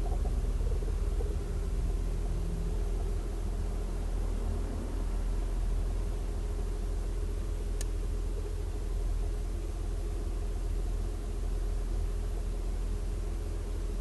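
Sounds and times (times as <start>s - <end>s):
car engine idling: 0.0s - 14.0s
sharp click: 7.8s - 8.0s.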